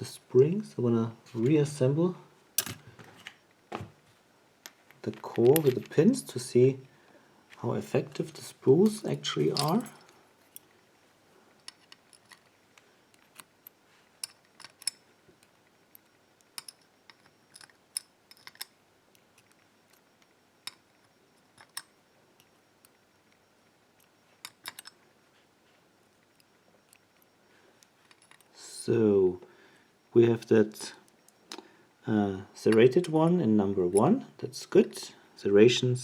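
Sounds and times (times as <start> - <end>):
small metal clicks and ticks: 11.6 - 25.0, 26.2 - 28.6.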